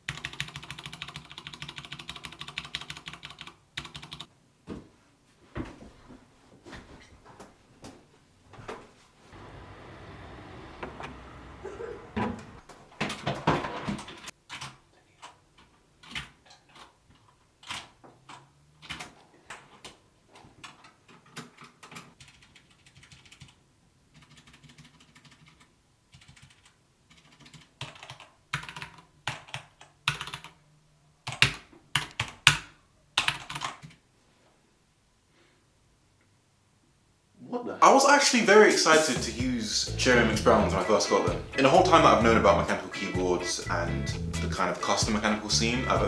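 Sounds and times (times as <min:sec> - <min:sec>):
typing on mechanical keyboard: 0:00.0 - 0:04.3, 0:14.2 - 0:19.9, 0:20.6 - 0:30.6, 0:31.2 - 0:34.0.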